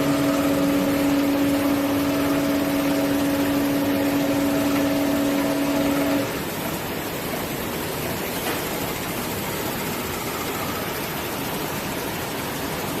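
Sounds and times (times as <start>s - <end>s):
band saw cutting machine running: 0.0s - 6.6s.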